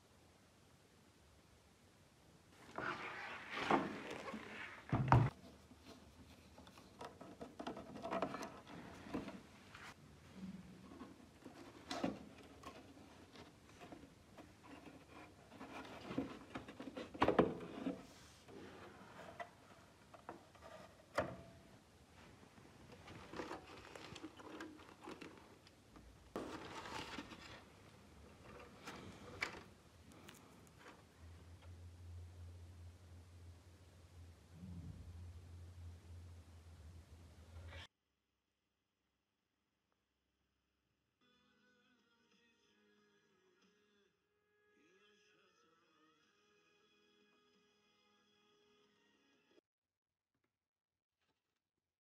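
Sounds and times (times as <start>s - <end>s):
handling clicks rustles and knocks: 22.9s - 31.1s.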